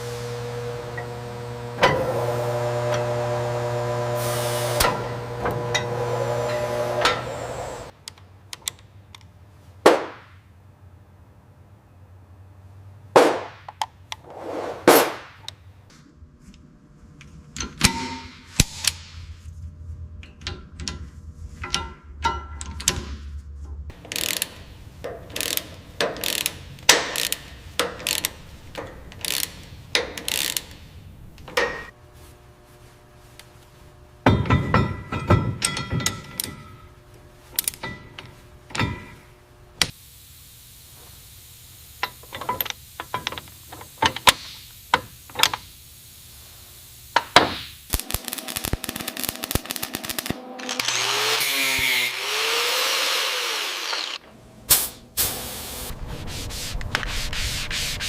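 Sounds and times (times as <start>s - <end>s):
ratchet clicks: 23.9s - 31.5s
hand tools knocking on metal: 34.2s - 36.8s.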